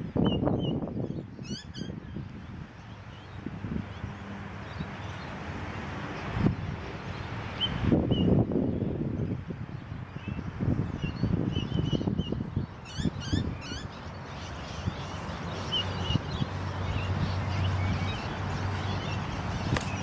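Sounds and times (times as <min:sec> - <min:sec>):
small birds chirping: 0:09.8 - 0:20.0.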